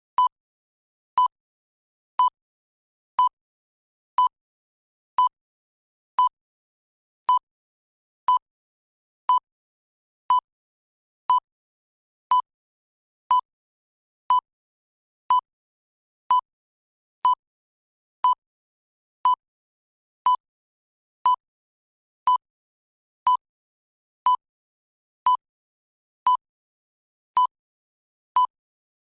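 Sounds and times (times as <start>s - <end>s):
electronic timer tick-beeps: 0.2s - 0.4s, 1.2s - 1.4s, 7.2s - 7.4s, 10.3s - 10.5s, 11.3s - 11.5s, 14.3s - 14.5s, 15.3s - 15.5s, 17.2s - 17.4s, 20.2s - 20.4s, 21.2s - 21.4s.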